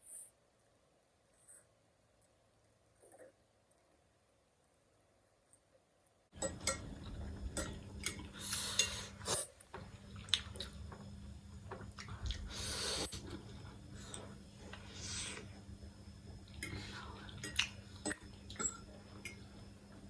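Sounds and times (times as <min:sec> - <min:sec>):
steady low hum: 0:06.3 - 0:20.0.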